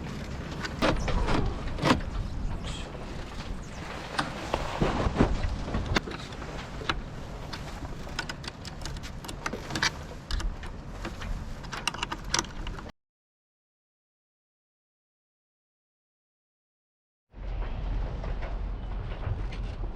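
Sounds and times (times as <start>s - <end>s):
wind rushing over microphone: 0.8s - 8.0s
sharp clicks and knocks: 3.3s - 12.9s.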